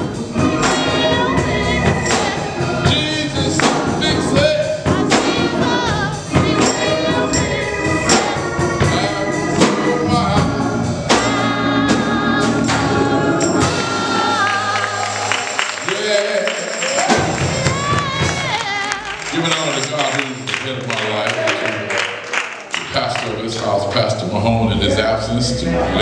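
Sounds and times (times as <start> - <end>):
gospel choir singing: 0.0 - 20.4, 22.8 - 26.0
band accompaniment: 0.0 - 26.0
tambourine: 0.2 - 10.0, 14.8 - 18.6, 19.5 - 20.6.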